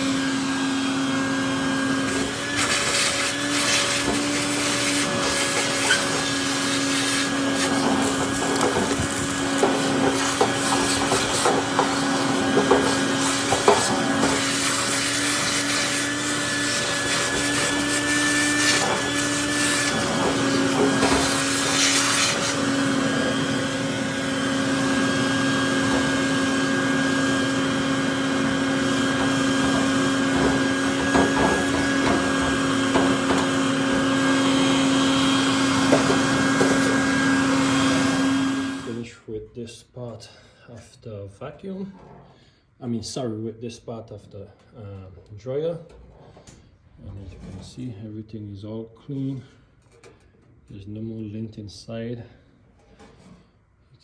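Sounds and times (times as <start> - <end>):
small vacuum humming: 0.0 - 39.0
vacuum nozzle scraping metal: 0.0 - 39.0.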